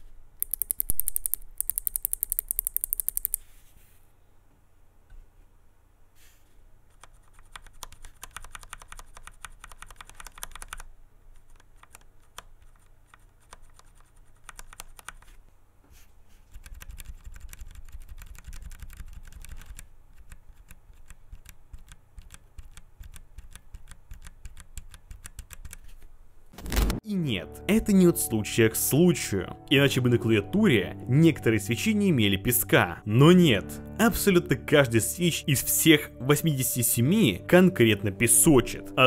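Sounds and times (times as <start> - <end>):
keyboard keys typing: 0.4 - 3.4, 6.9 - 15.4, 16.5 - 25.8.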